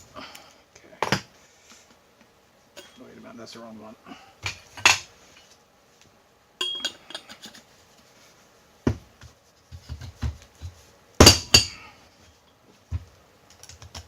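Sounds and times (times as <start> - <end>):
metal tools clinking on workbench: 2.8 - 3.1, 6.6 - 7.6.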